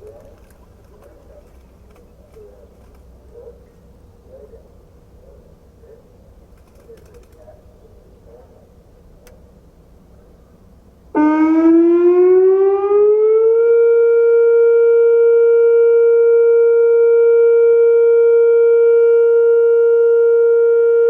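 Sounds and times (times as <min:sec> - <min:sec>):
electronic warning siren tone: 0:11.2 - 0:21.0.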